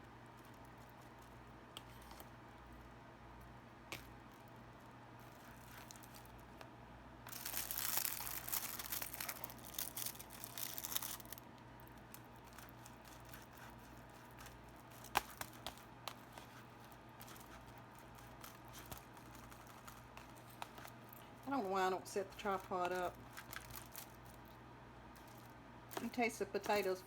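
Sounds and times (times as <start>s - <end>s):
plastic film crinkling and tearing: 5.2s - 6.6s, 7.2s - 24.5s, 25.1s - 26.9s.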